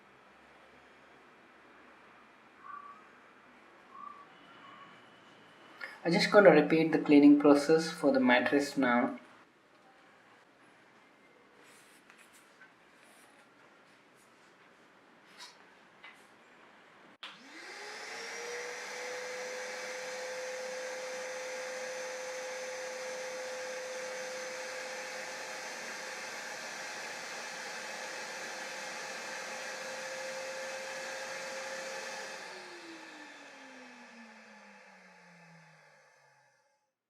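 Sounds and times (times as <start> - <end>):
vacuum cleaner motor whining: 17.3 - 36.9.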